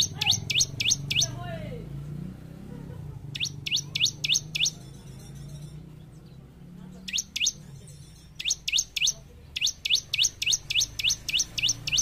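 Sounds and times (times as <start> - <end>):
bird chirping: 0.0 - 1.5, 3.3 - 12.0.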